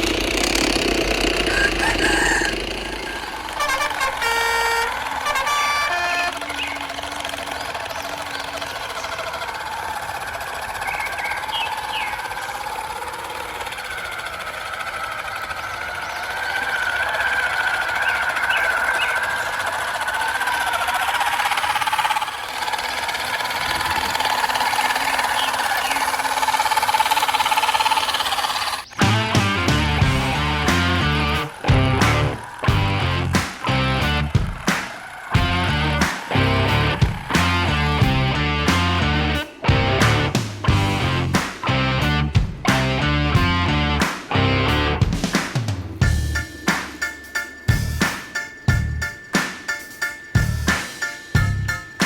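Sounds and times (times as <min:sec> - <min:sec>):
small electric motor whining: 0:00.0 - 0:29.0
simulated diesel engine sound: 0:00.0 - 0:45.2, 0:46.0 - 0:52.0.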